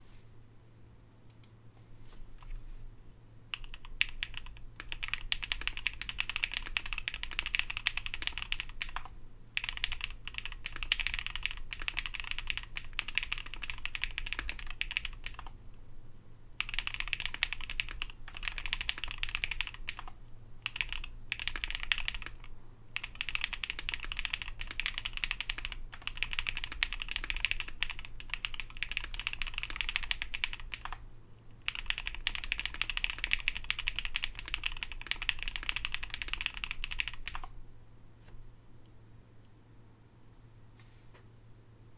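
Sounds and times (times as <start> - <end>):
faint low hum: 0.0 - 41.9
mechanical keyboard typing: 3.5 - 15.6, 16.6 - 31.0, 31.7 - 37.5.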